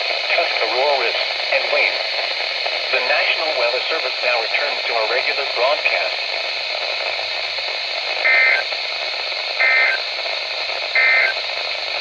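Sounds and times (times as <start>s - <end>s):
radio receiver hiss: 0.0s - 12.0s
two-tone digital data chirps: 11.0s - 11.4s.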